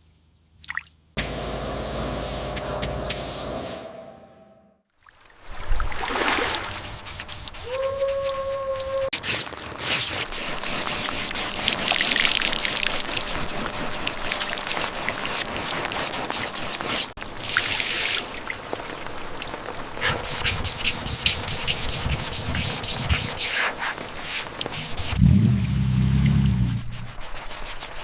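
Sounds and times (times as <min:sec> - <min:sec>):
rubbing and hissing: 0:06.4 - 0:17.2, 0:20.0 - 0:28.0.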